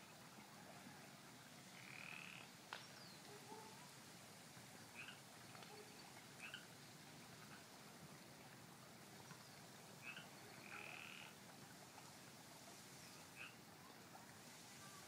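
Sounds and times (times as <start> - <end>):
faint frogs calling: 1.7 - 3.8, 4.9 - 6.7, 10.0 - 11.4, 13.1 - 13.7.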